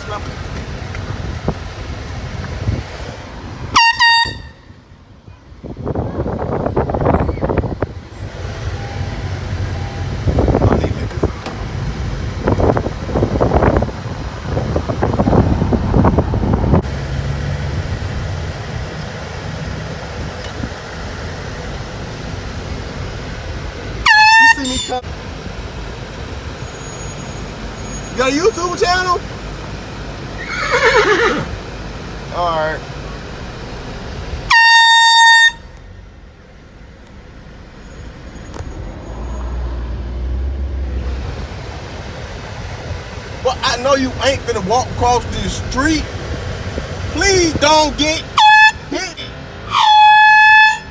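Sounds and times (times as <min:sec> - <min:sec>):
car engine humming: 0:00.0 - 0:50.9
wind on microphone: 0:00.5 - 0:03.7, 0:05.5 - 0:08.4, 0:09.5 - 0:17.1
air horn blast: 0:03.7 - 0:04.8, 0:24.0 - 0:25.0, 0:34.5 - 0:35.8, 0:47.2 - 0:50.9.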